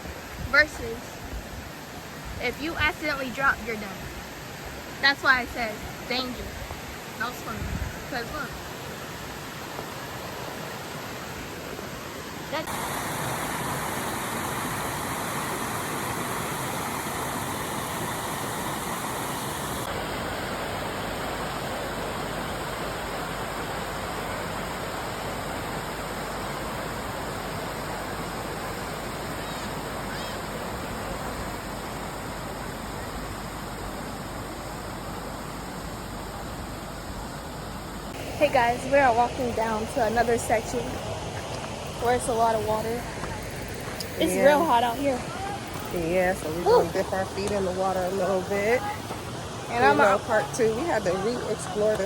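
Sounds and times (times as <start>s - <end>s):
waterfall rushing: 4.1s - 52.0s.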